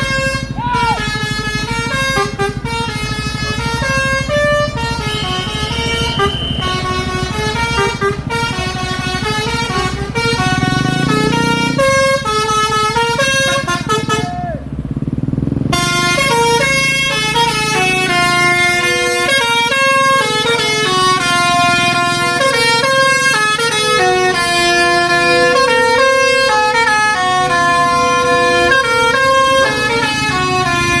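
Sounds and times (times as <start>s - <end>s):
multi-tone air horn melody: 0.0s - 14.6s, 15.7s - 31.0s
bus engine rumble: 0.0s - 31.0s.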